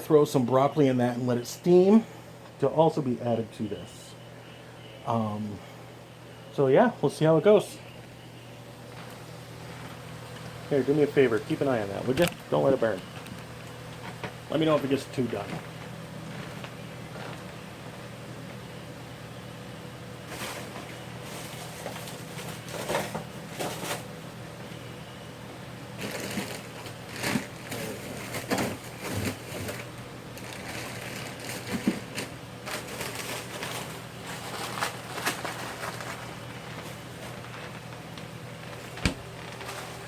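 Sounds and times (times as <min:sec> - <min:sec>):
steady low hum: 0:00.0 - 0:40.0
rustling: 0:26.0 - 0:40.0.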